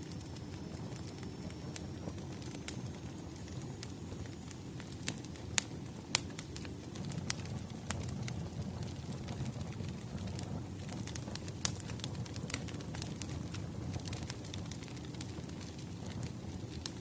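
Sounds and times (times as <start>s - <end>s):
low rumble of burning logs: 0.0s - 17.0s
wood fire crackling: 0.0s - 17.0s.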